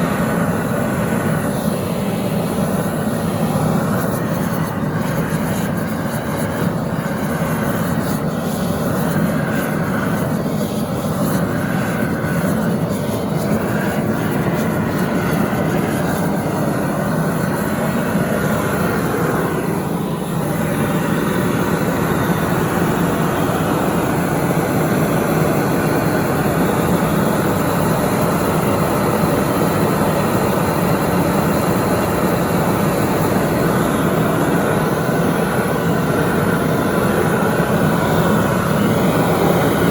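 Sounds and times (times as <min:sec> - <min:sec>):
gas torch flame roaring: 0:00.0 - 0:39.9.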